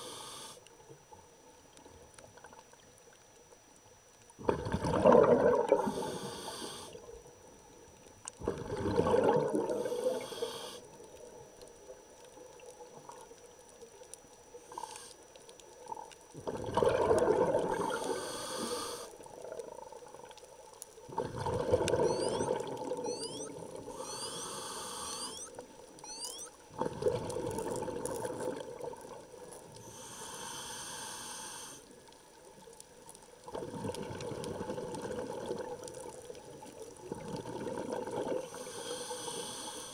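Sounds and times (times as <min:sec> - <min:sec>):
exhaled bubbles underwater: 0:04.4 - 0:07.2, 0:08.4 - 0:10.6, 0:15.8 - 0:29.8, 0:33.4 - 0:39.5
regulator hissing: 0:05.8 - 0:06.9, 0:09.8 - 0:10.8, 0:17.8 - 0:19.1, 0:23.1 - 0:26.4.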